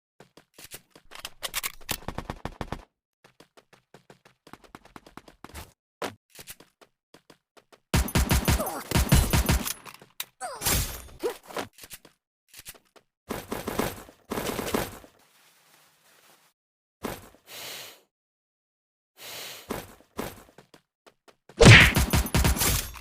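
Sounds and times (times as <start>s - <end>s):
rapid sharp bangs: 21.6s - 22.6s.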